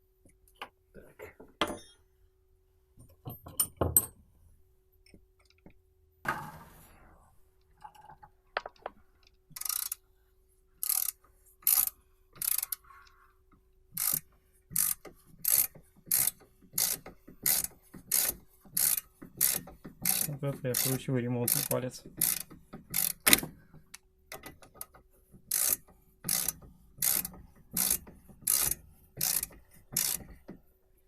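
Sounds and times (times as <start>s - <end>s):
ratchet wrench clicking: 9.5s - 10.0s, 10.8s - 12.9s, 14.0s - 24.9s, 25.5s - 30.4s.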